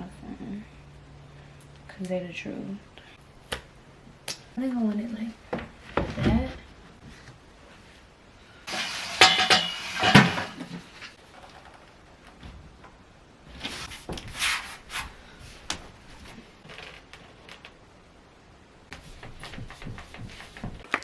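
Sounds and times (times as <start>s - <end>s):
objects knocking and clicking: 18.9s - 21.0s.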